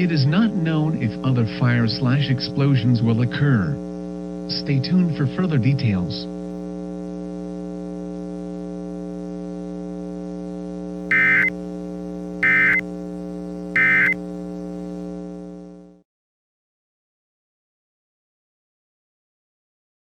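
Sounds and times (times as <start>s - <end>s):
steady electrical hum: 11.0s - 15.8s
shrill data tone bursts: 11.1s - 11.5s, 12.4s - 12.8s, 13.8s - 14.2s.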